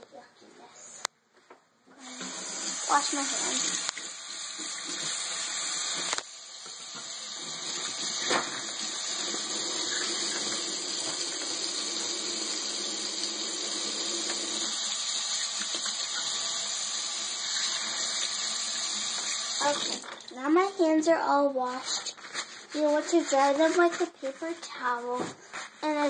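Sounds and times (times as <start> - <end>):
tap water running into sink: 2.0 - 20.5.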